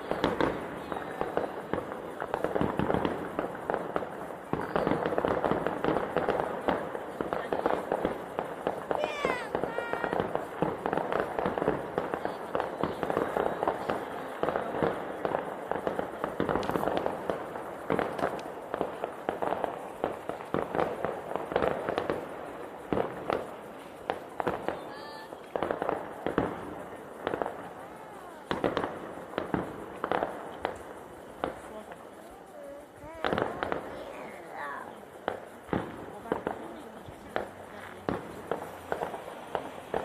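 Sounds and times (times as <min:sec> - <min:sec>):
firework whistle: 0:00.0 - 0:36.3
fireworks crackling and banging: 0:00.0 - 0:40.0.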